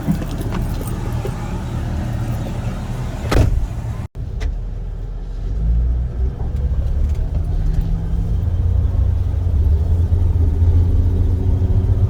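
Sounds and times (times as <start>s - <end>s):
tyre and drivetrain drone: 0.0s - 12.0s
loud thump: 3.3s - 3.8s.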